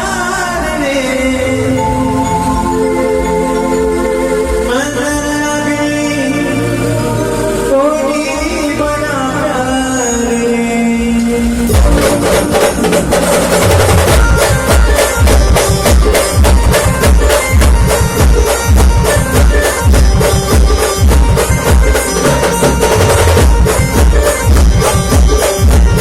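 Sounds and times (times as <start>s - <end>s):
rapid drum beats: 11.3s - 26.0s
brass band playing: 11.7s - 25.0s.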